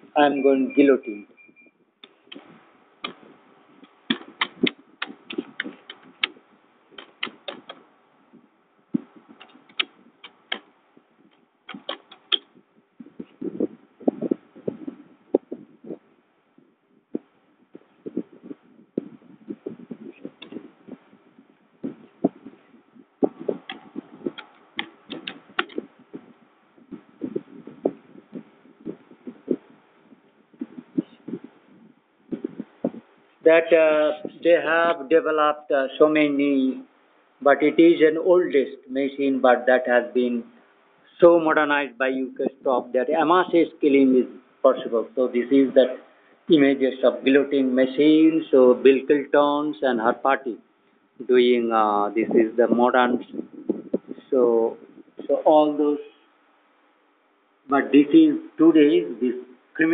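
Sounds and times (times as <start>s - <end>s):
sharp clicks: 3.8s - 6.4s, 7.0s - 7.8s, 9.4s - 10.7s, 11.3s - 12.5s, 23.2s - 25.9s
computer keyboard typing: 11.7s - 12.4s.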